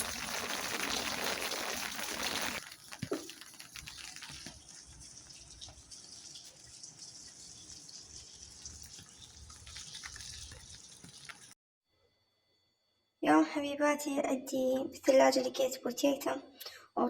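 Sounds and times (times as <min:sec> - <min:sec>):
water dripping and trickling: 0:00.0 - 0:11.6.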